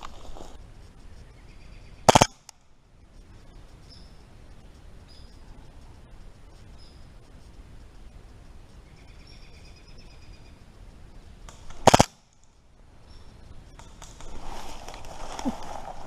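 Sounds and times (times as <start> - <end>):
rustling movement: 0.0 - 1.2, 13.8 - 16.0
faint bird chirps: 0.9 - 2.1, 3.2 - 5.8, 6.4 - 7.5, 8.7 - 11.4, 13.0 - 14.2
airsoft pistol firing: 2.1 - 2.4, 11.8 - 12.2.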